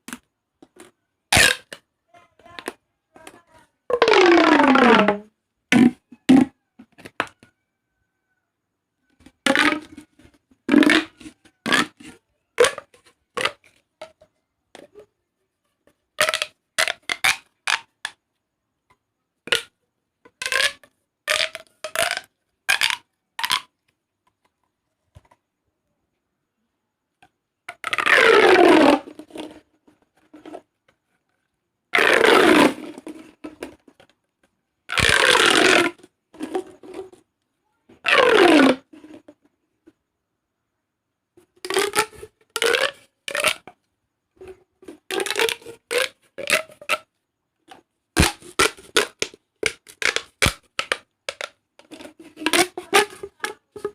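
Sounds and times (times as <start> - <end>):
plastic tube crackling: 0.0 - 1.8, 2.4 - 7.5, 9.1 - 15.1, 15.8 - 18.2, 19.4 - 25.4, 27.2 - 40.0, 41.4 - 43.8, 44.4 - 53.9
plastic tube clicks and pops: 9.5 - 10.0, 19.4 - 19.7, 20.3 - 24.5, 41.6 - 43.8, 45.1 - 47.0, 47.7 - 53.9.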